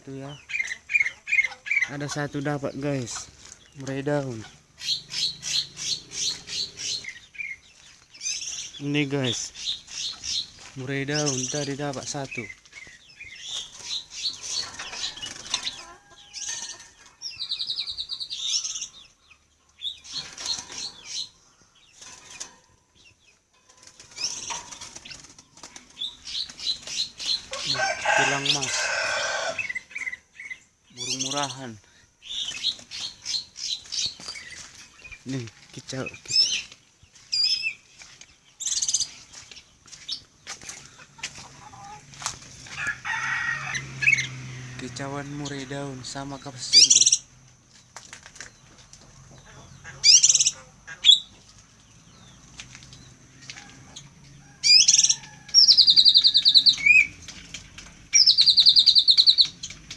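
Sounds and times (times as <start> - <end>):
songbirds chirping: 0.0 - 59.9
fast rattling bird trill: 0.2 - 18.9, 23.9 - 35.0, 42.6 - 47.3, 50.0 - 51.3, 54.6 - 59.9.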